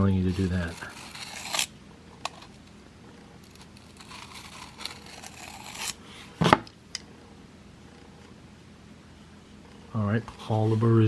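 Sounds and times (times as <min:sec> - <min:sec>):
short rasp: 0:00.4 - 0:01.7, 0:03.9 - 0:06.0
blade scraping on sharpening plate: 0:00.6 - 0:01.7, 0:03.9 - 0:06.0.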